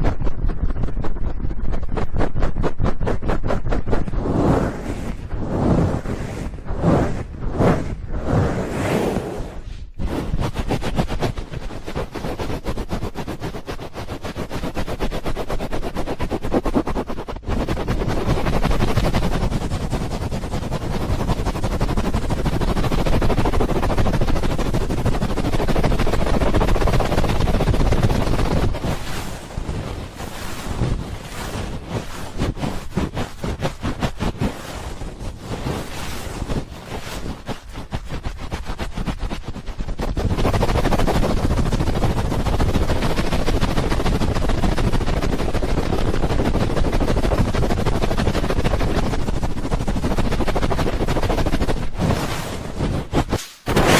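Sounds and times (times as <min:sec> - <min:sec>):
hands rubbing microphone: 0:00.0 - 0:53.9.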